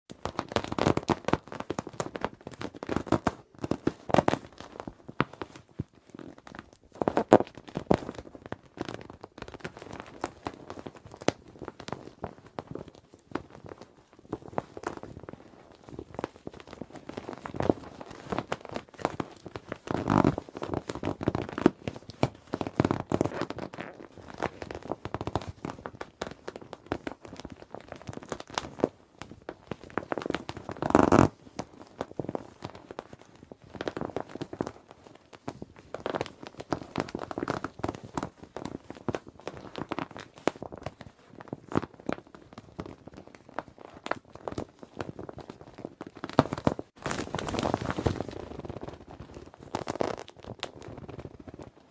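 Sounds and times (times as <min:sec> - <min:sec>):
plastic swim ring crinkling: 0:44.9 - 0:51.6.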